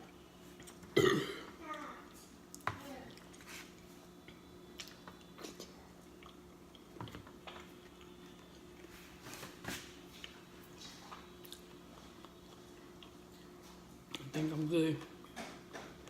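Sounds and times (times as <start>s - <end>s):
chewing and lip-smacking: 4.2s - 8.9s, 10.1s - 14.4s.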